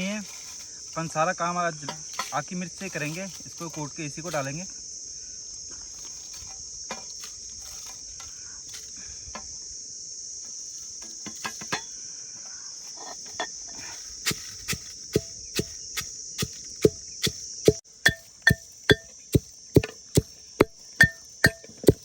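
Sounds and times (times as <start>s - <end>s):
insects chirring: 0.0s - 22.0s
chillies being pounded: 14.3s - 22.0s.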